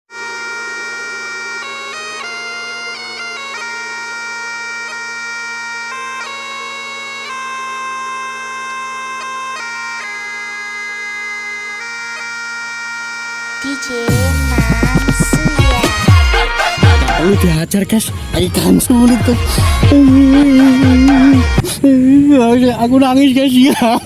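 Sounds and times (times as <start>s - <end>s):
bagpipe melody with drone: 0.1s - 22.5s.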